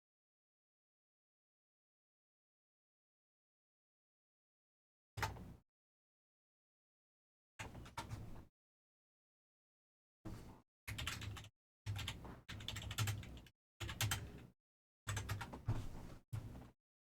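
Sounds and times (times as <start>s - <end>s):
computer keyboard typing: 10.9s - 14.5s, 15.1s - 15.6s.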